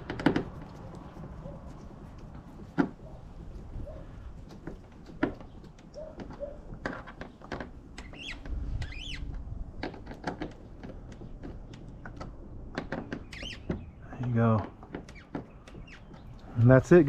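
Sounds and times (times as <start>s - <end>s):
short squeaks: 6.0s - 10.4s, 13.0s - 14.0s.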